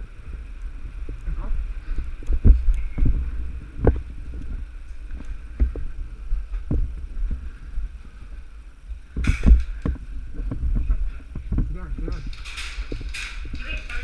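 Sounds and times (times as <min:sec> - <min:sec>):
footsteps: 0:00.0 - 0:14.0
steady rumble: 0:00.0 - 0:14.0
sharp crack: 0:12.0 - 0:14.0.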